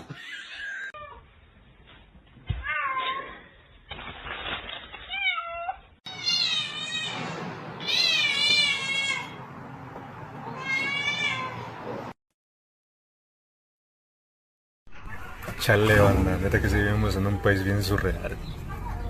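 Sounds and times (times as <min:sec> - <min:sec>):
cats meowing: 0:00.0 - 0:01.2, 0:05.0 - 0:09.4, 0:10.4 - 0:12.1.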